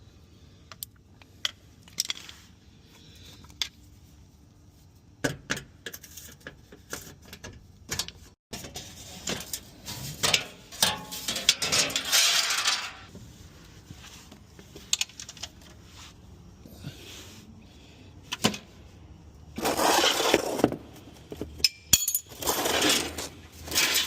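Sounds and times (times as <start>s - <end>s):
rattle and rustle: 1.2s - 5.0s, 5.8s - 16.3s
metal hand tools clinking: 21.6s - 22.4s.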